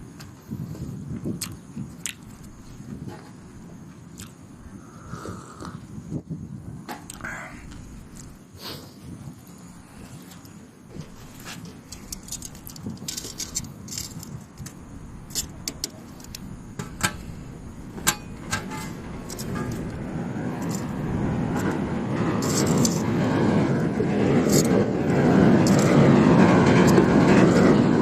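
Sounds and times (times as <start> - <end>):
small metal items clinking: 11.9 - 14.7, 18.0 - 20.0, 20.6 - 21.8, 22.4 - 23.0
low rushing rumble: 11.9 - 28.0.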